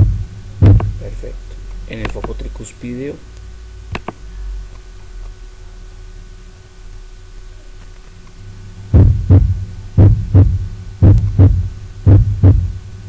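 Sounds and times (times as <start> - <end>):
heartbeat through stethoscope: 0.0 - 1.0, 8.9 - 12.8
steady low hum: 0.0 - 13.0.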